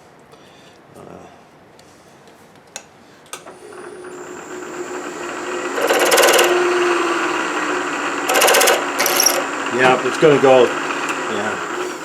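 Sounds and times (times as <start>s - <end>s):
milling machine spindle humming: 3.6s - 12.0s
drill buzzing chatter: 3.8s - 12.0s.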